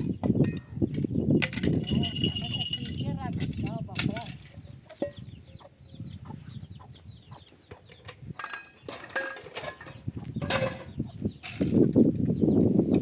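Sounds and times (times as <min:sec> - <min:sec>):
chicks peeping: 0:04.6 - 0:08.4, 0:10.0 - 0:13.0.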